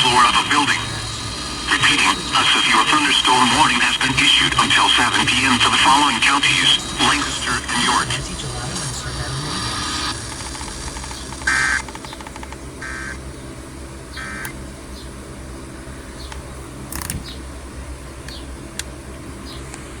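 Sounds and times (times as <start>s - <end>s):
buzzy warbling digital tones: 0.0s - 12.0s, 14.2s - 14.5s
low steady hum: 0.0s - 20.0s.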